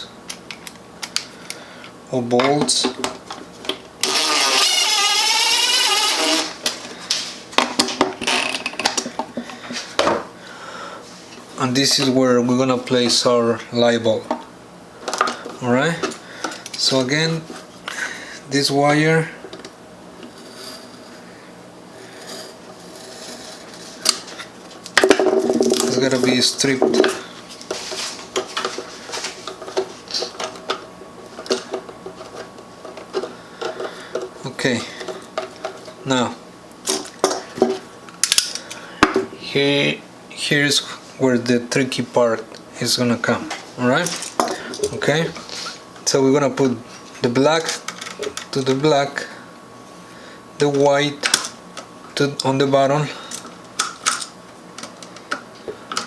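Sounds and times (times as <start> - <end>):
cordless drill driving a screw: 4.0 - 6.6
wire strippers clicking and snipping: 38.2 - 38.7.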